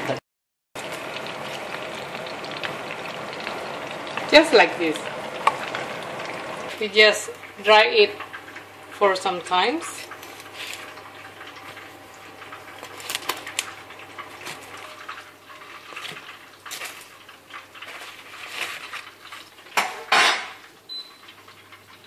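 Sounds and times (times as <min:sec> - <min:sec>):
metal utensils clinking on dishes: 0:17.8 - 0:20.6.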